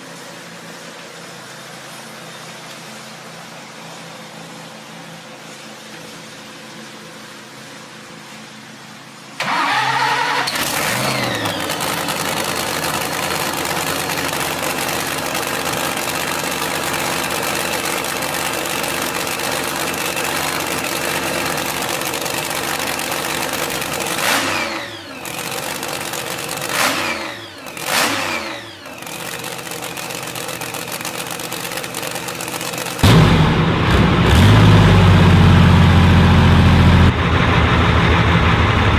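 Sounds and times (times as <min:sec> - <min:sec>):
deep engine running: 0:09.4 - 0:38.9
engine running and revving: 0:09.5 - 0:38.9.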